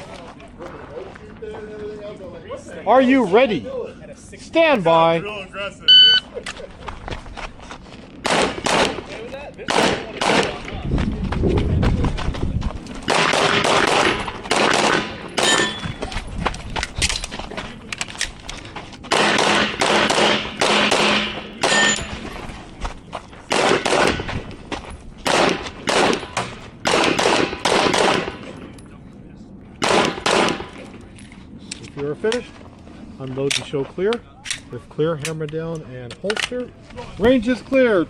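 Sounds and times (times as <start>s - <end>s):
pistol shots: 8.2s - 9.1s, 9.7s - 10.6s, 13.1s - 15.8s, 19.1s - 22.0s, 23.5s - 24.3s, 25.2s - 28.4s, 29.8s - 30.8s.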